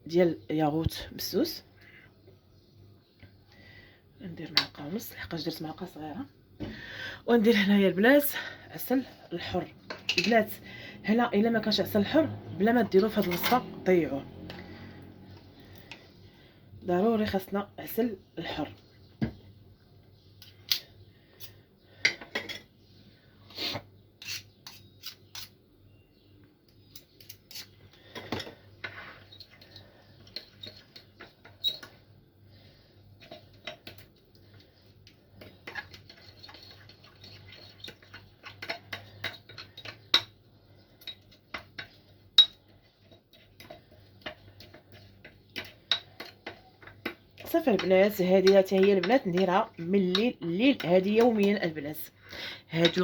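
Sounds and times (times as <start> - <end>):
spoon clinking against bowl: 42.4 - 42.6.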